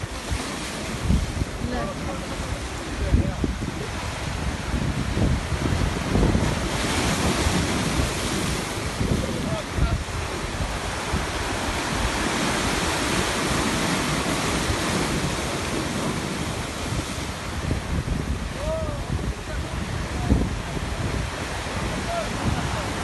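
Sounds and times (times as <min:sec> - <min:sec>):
waves breaking on shore: 0:00.0 - 0:23.0
wind buffeting microphone: 0:00.0 - 0:23.0.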